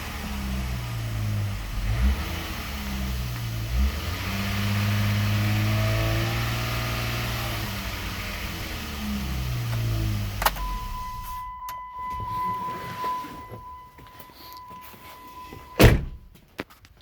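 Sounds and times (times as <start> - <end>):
engine running: 0.0 - 11.4
high warning tone: 10.5 - 15.9
loud slam: 15.8 - 16.3.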